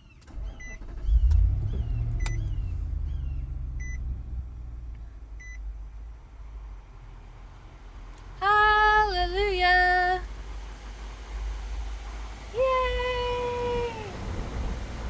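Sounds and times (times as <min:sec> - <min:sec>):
car engine starting and idling: 0:00.0 - 0:15.0
birds chirping: 0:01.0 - 0:04.0.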